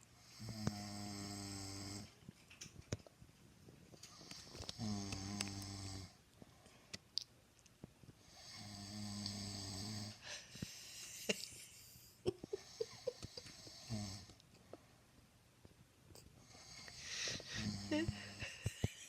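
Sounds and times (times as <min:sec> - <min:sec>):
man snoring: 0:00.2 - 0:02.1, 0:04.7 - 0:06.2, 0:08.3 - 0:10.2, 0:12.7 - 0:14.3, 0:16.5 - 0:18.4
small clicks and squeaks in breaths: 0:03.8 - 0:05.6.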